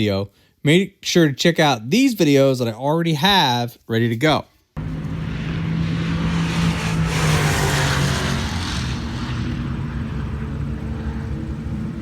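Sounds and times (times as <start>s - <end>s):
car engine running: 4.8s - 12.0s
wind or road noise: 4.8s - 12.0s.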